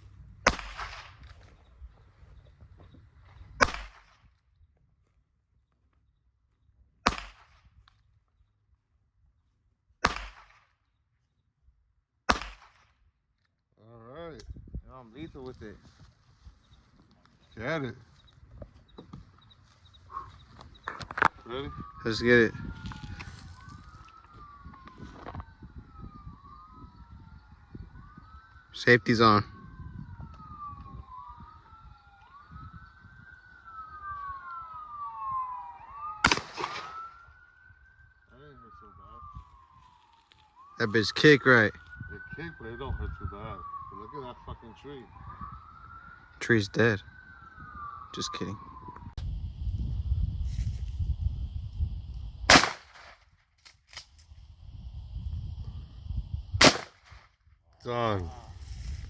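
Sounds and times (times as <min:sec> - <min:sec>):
loud gunshot with echo: 0:00.4 - 0:01.2, 0:03.6 - 0:04.2, 0:07.0 - 0:07.6, 0:10.0 - 0:10.6, 0:12.3 - 0:12.8, 0:36.2 - 0:37.1, 0:52.5 - 0:53.2, 0:56.6 - 0:57.2
revolver shots with echo: 0:56.6 - 0:57.0.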